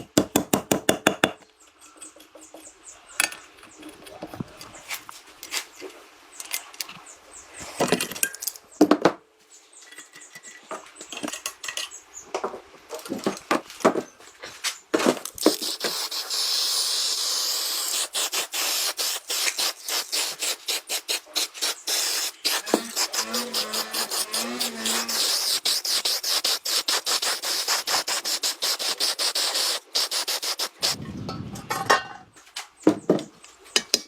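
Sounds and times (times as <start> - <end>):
rasping hiss of hand tool strokes: 15.4 - 31.0.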